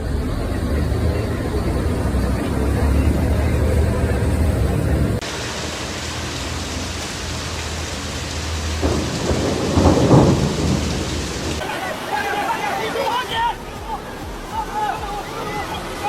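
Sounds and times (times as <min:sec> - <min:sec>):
low engine-like hum: 0:00.0 - 0:08.8
thunder rumble: 0:00.0 - 0:12.1
heavy rain falling: 0:00.0 - 0:16.0.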